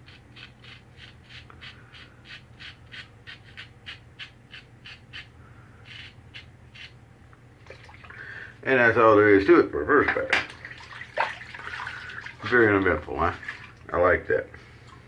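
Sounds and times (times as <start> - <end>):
razor scraping stubble: 0.0 - 7.0.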